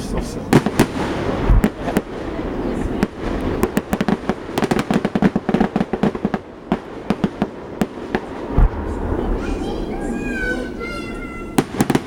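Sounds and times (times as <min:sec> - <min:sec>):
fireworks popping and banging: 0:00.0 - 0:12.0
deep firework boom: 0:00.5 - 0:12.0.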